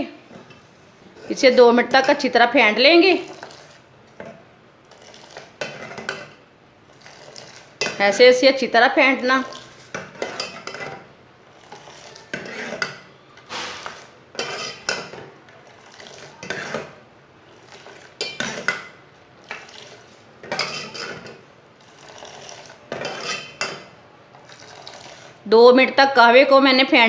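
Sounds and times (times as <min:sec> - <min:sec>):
utensil clattering against pot: 0:09.5 - 0:11.1, 0:11.7 - 0:15.4, 0:17.7 - 0:21.4, 0:22.0 - 0:23.9.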